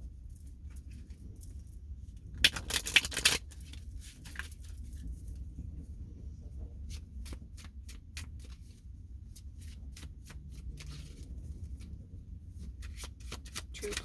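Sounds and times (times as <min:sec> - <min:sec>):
cards being shuffled: 0:02.4 - 0:04.7, 0:07.2 - 0:08.8, 0:09.4 - 0:11.9, 0:12.7 - 0:14.0.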